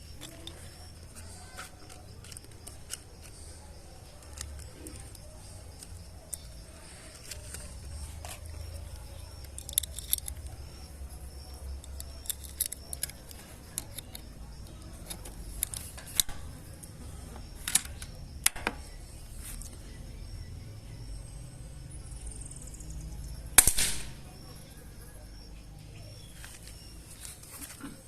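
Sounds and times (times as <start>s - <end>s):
rifle metallic clicks: 11.8s - 14.3s, 15.0s - 16.5s, 17.6s - 18.8s, 23.6s - 24.2s.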